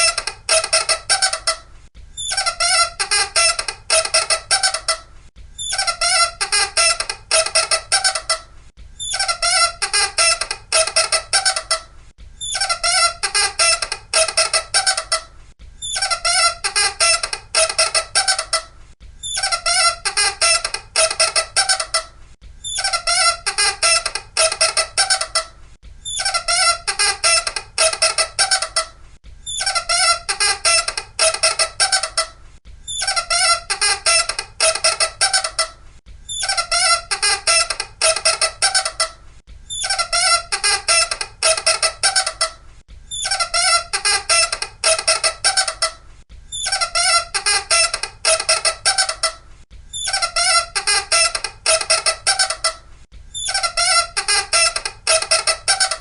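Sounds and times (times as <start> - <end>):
high-pitched squeaking: 0.0 - 56.0.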